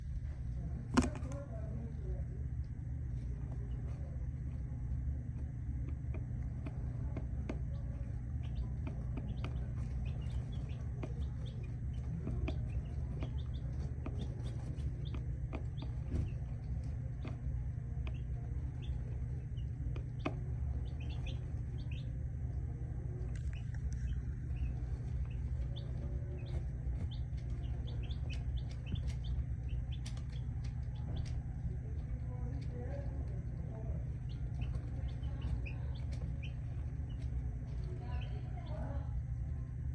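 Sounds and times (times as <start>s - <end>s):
low rumble: 0.0s - 39.9s
chicks peeping: 3.1s - 4.6s, 5.7s - 39.1s
chickens calling: 7.7s - 22.2s, 23.1s - 31.9s, 34.0s - 38.7s.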